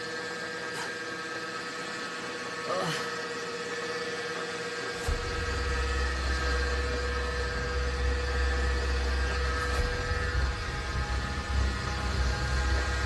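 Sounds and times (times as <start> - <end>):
machine hum with whine: 0.0 - 13.0
deep low rumble: 5.1 - 13.0.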